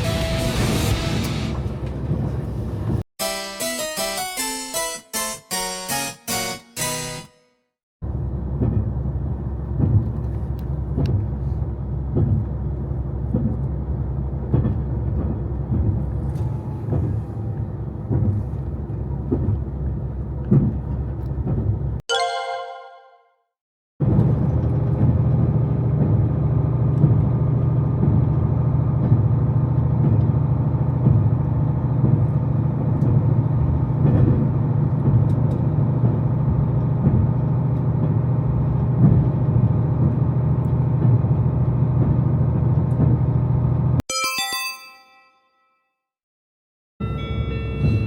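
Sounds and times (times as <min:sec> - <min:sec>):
train engine and wheels rumbling: 0:00.0 - 0:03.0, 0:08.0 - 0:22.0, 0:24.0 - 0:44.0
onboard chime: 0:22.1 - 0:23.3, 0:44.1 - 0:45.7.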